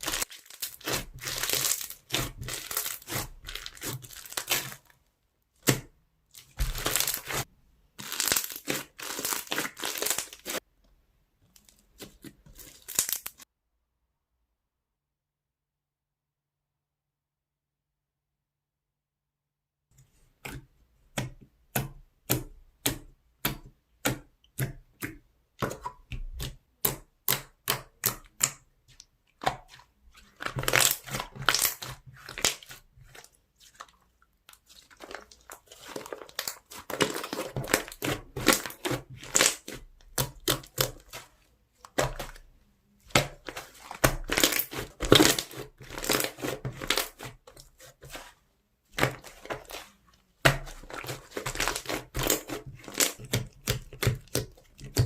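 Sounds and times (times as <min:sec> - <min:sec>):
slime squished crackling: 0:00.0 - 0:04.9, 0:05.6 - 0:10.6, 0:11.9 - 0:13.4, 0:27.3 - 0:55.0.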